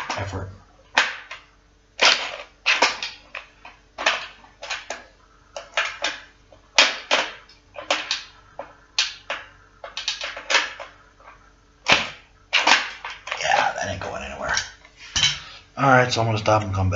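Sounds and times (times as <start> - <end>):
hard objects knocking and clacking: 0.0 - 15.5
faint steady hum: 0.0 - 16.9.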